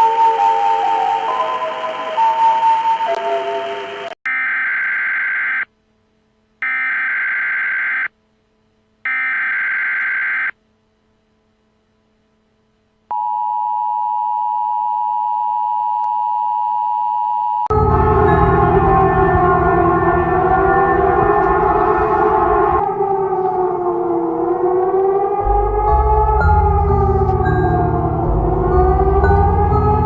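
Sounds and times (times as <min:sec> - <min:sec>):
loud sound: 0:17.7 - 0:30.0.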